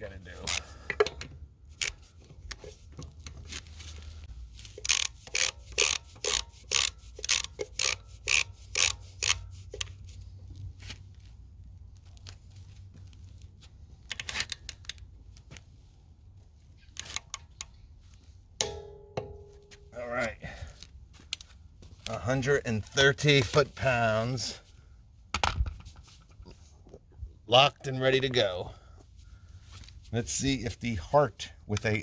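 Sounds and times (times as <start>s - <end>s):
torque wrench ratchet clicks: 4.8s - 9.9s.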